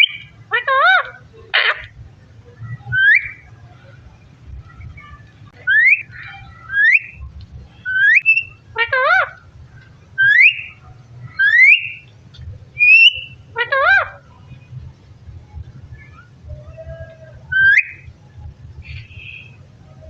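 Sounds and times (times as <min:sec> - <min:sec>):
parrot warbling call: 0:00.0 - 0:01.9, 0:02.9 - 0:03.4, 0:05.6 - 0:07.2, 0:07.8 - 0:09.4, 0:10.2 - 0:12.0, 0:12.8 - 0:14.2, 0:17.4 - 0:18.1
parrot whistling: 0:00.0 - 0:01.9, 0:02.9 - 0:03.5, 0:05.6 - 0:07.2, 0:07.8 - 0:09.4, 0:10.2 - 0:10.8, 0:11.4 - 0:12.1, 0:12.8 - 0:14.2, 0:17.4 - 0:18.1.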